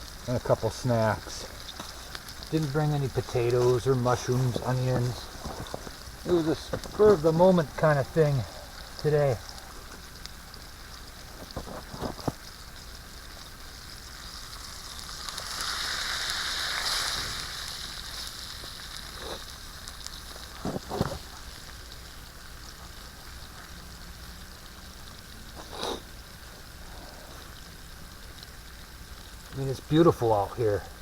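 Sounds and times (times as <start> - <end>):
fire popping: 0.0 - 31.0
steak sizzling on a grill: 0.0 - 31.0.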